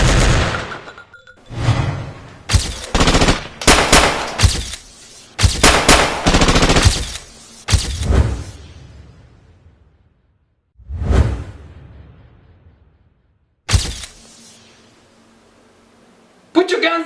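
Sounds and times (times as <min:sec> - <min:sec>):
rapid automatic gunfire: 0:00.0 - 0:00.6, 0:02.5 - 0:04.6, 0:05.6 - 0:07.2.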